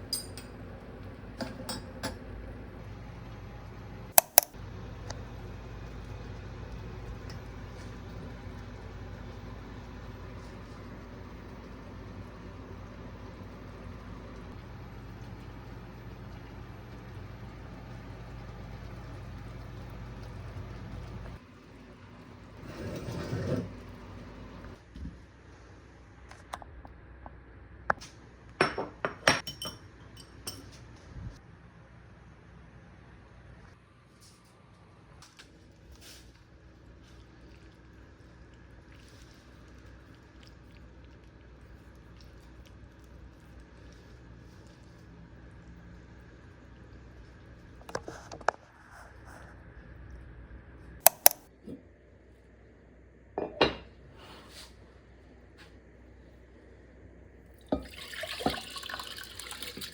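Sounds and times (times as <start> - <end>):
dishes and utensils clinking: 0.0 - 0.6, 28.6 - 30.8.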